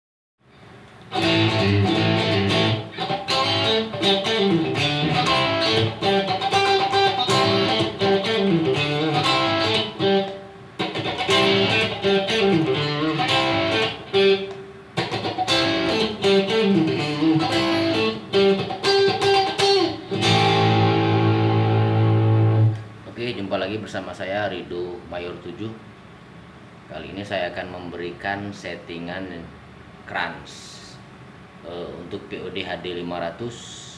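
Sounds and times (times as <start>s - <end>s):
overdriven electric guitar licks: 0.9s - 23.0s.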